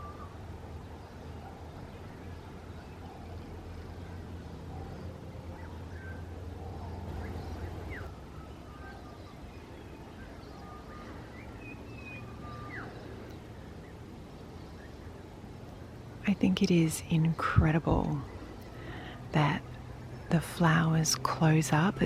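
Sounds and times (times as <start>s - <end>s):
birds chirping and whistling: 1.1s - 16.0s.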